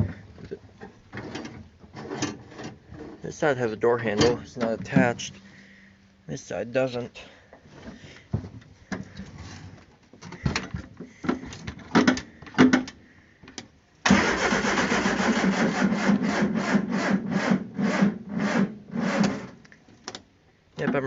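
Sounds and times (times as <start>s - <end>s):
starter motor cranking engine: 14.1s - 19.6s.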